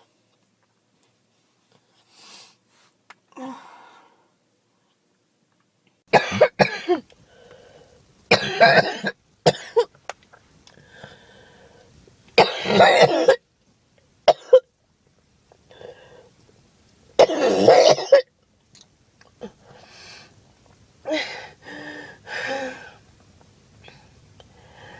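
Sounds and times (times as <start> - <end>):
girl coughing: 6.2 - 7.0, 8.3 - 9.9, 12.4 - 13.4, 14.3 - 14.6, 17.2 - 18.3
faint breaths: 7.2 - 8.1, 10.6 - 12.0, 15.7 - 16.4, 19.4 - 20.4, 21.1 - 23.1, 23.8 - 24.9.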